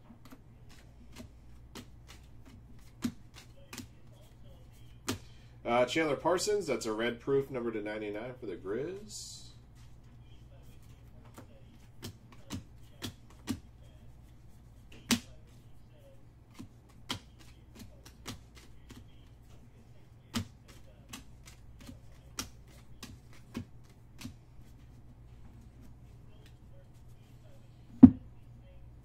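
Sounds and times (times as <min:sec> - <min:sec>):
faint low hum: 0:00.0 - 0:29.0
trading cards clicking and tapping: 0:00.1 - 0:05.4, 0:09.8 - 0:27.2.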